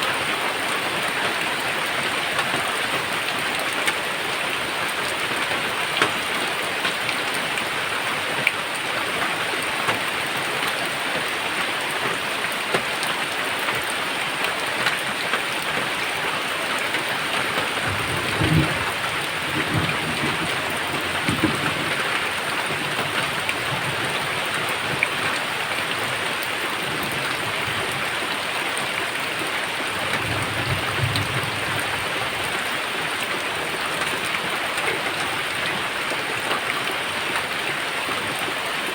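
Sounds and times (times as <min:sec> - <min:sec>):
steady rain: 0:00.0 - 0:38.9
low thunder rumbling: 0:17.4 - 0:25.0, 0:29.9 - 0:32.6.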